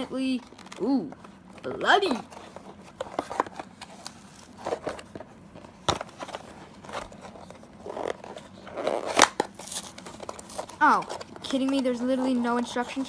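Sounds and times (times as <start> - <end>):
packing tape ripping: 7.8 - 11.0.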